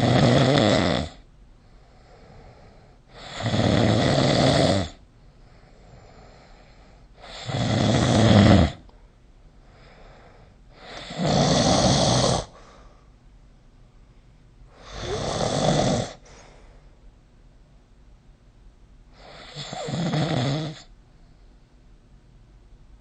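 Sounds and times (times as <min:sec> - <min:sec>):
person snoring: 0:00.0 - 0:01.2, 0:02.0 - 0:05.0, 0:05.6 - 0:08.9, 0:10.7 - 0:12.8, 0:14.7 - 0:16.5, 0:19.2 - 0:20.9
faint breathing: 0:01.5 - 0:03.2, 0:05.1 - 0:07.4, 0:08.8 - 0:13.3, 0:13.9 - 0:17.2, 0:21.0 - 0:21.8.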